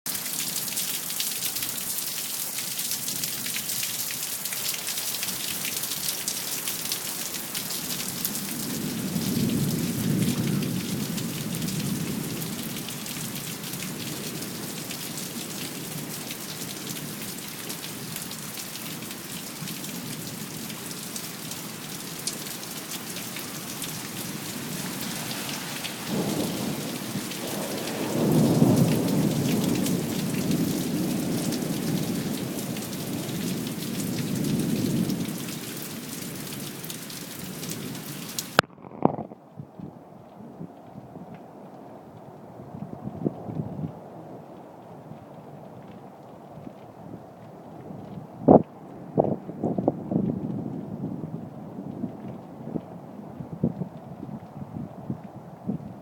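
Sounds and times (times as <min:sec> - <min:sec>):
steady rain falling: 0:00.1 - 0:56.0
thunder rumbling: 0:38.6 - 0:39.4.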